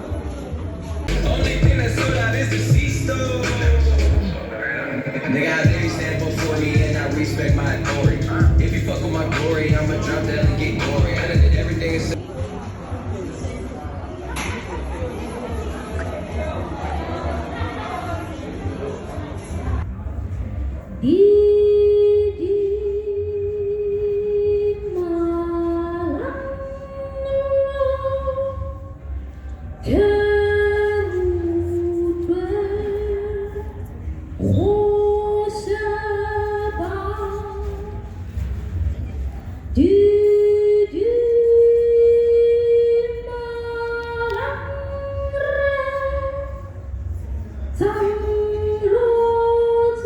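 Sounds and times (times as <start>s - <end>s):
person singing long notes: 34.4s - 36.1s.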